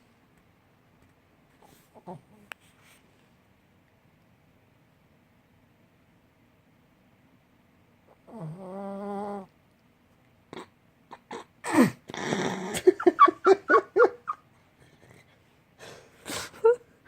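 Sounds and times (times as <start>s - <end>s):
dog whimpering grunts: 1.9s - 2.4s, 8.1s - 9.5s, 10.5s - 14.4s.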